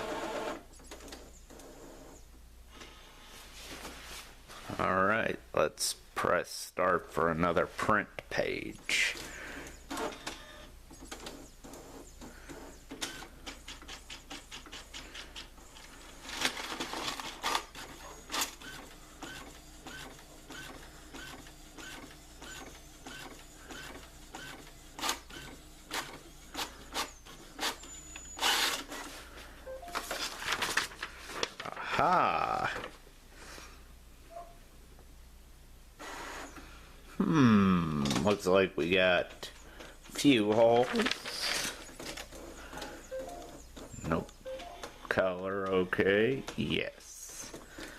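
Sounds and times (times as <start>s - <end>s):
printer paper-feed whirring: 0.0s - 2.2s, 9.6s - 29.2s, 40.3s - 44.2s.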